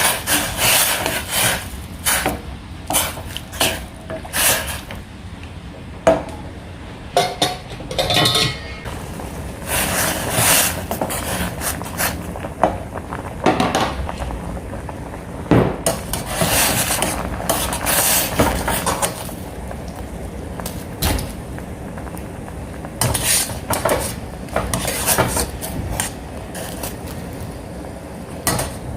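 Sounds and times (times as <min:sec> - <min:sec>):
utensil scraping and knocking a pan: 0:07.2 - 0:08.9, 0:23.0 - 0:27.0.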